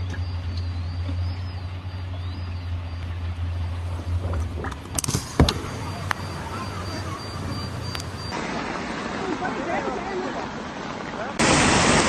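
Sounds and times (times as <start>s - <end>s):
vehicle engine droning: 0.0s - 8.5s.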